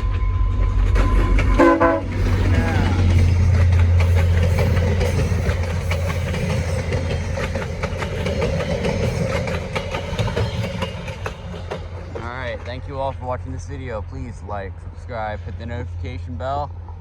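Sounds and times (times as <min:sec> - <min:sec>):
train rumble: 0:00.0 - 0:17.0
train wheels clicking over rail joints: 0:00.7 - 0:17.0.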